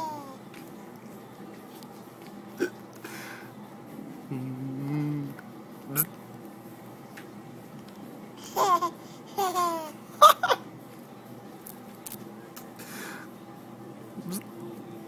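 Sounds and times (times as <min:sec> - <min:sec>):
baby laughing: 0:08.4 - 0:10.6.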